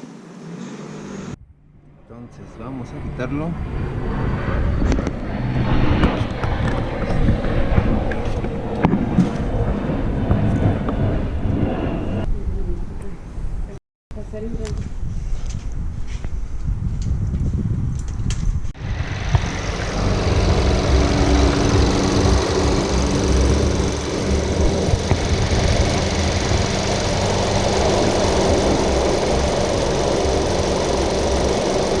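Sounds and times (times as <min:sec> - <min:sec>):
wind buffeting microphone: 0:02.6 - 0:31.9
car engine running: 0:18.8 - 0:32.0.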